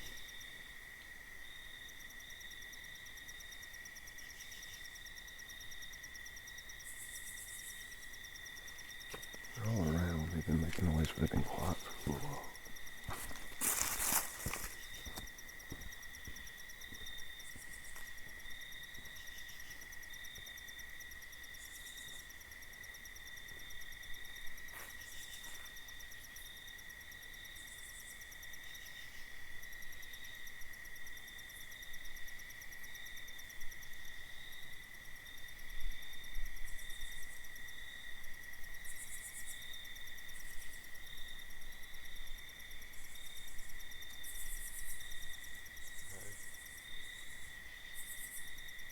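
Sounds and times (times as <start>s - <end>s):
crickets trilling: 0.0s - 48.9s
high insect buzzes: 11.7s - 16.4s.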